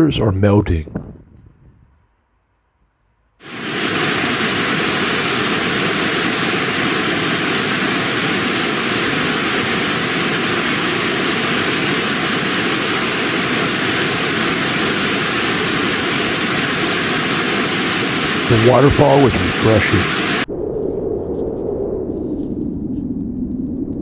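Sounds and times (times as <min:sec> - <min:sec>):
rushing water roar: 0:03.4 - 0:20.5.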